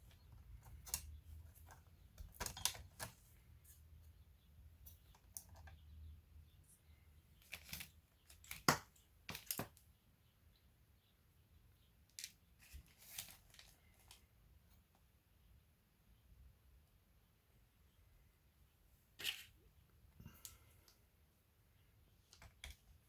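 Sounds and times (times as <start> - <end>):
tools clicking on laptop parts: 0.1 - 3.2.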